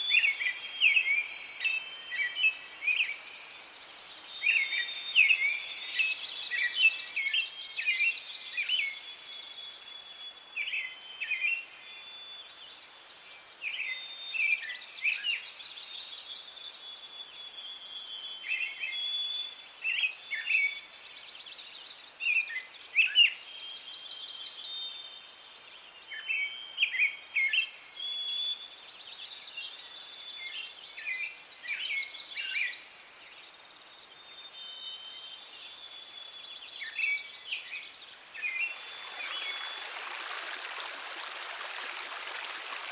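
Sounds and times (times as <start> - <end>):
faint steady hiss: 37.8 - 42.9.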